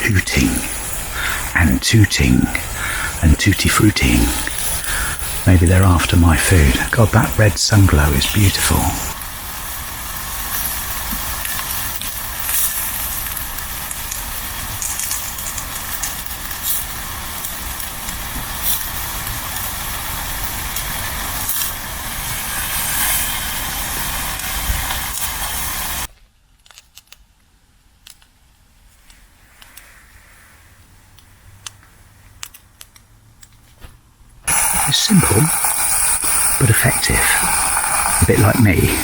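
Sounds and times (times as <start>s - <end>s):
food frying in oil: 9.1s - 26.1s, 34.5s - 39.0s.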